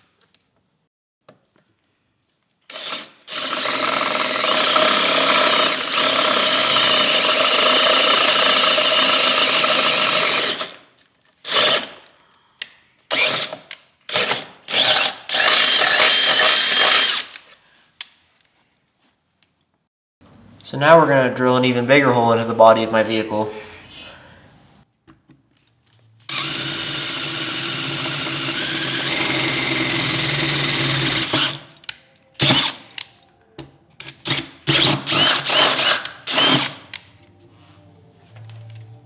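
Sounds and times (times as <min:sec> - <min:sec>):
power drill boring into steel: 0:02.7 - 0:10.8, 0:11.5 - 0:12.0, 0:13.1 - 0:17.5, 0:26.3 - 0:31.8, 0:32.4 - 0:33.0, 0:34.1 - 0:37.0.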